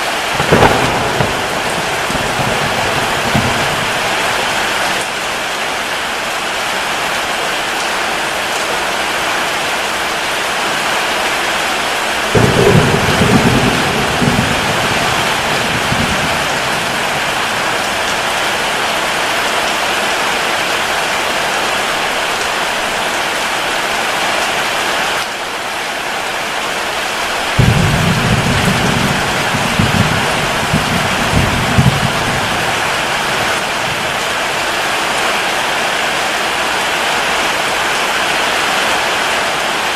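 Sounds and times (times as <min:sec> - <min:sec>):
thunder rumbling: 0:00.0 - 0:05.3, 0:12.2 - 0:19.8, 0:27.2 - 0:35.2
heavy rain: 0:00.0 - 0:39.9.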